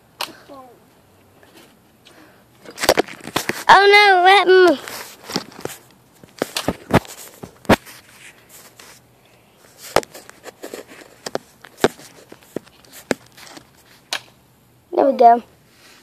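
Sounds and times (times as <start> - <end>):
footsteps: 4.7 - 9.0, 9.7 - 14.0.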